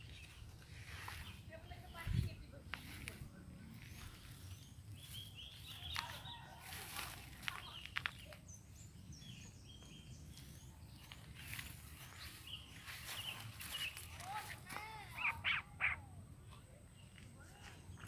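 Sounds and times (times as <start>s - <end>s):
birds chirping: 0.0s - 18.0s
chickens calling: 4.0s - 8.2s, 11.2s - 16.3s.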